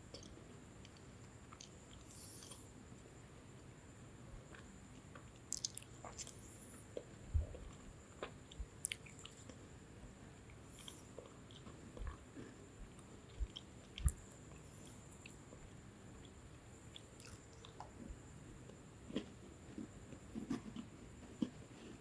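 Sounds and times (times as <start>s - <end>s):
biscuits crunching while chewed: 4.4s - 9.7s, 10.5s - 22.0s.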